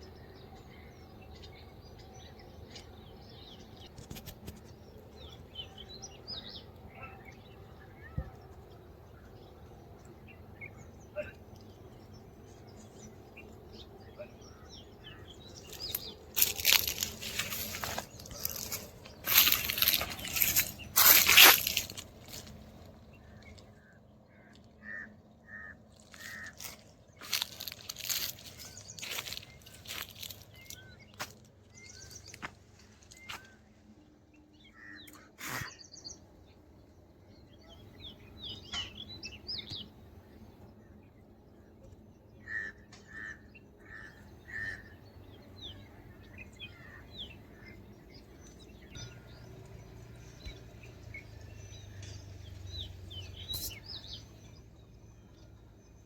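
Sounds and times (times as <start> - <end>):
small birds chirping faintly: 0.0 - 56.0
rustling crackling noise: 15.6 - 23.7, 25.9 - 33.5.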